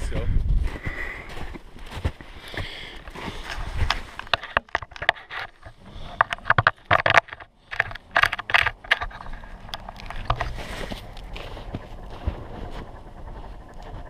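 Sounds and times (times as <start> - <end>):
crunching in deep snow: 0.6 - 4.2, 9.0 - 14.0.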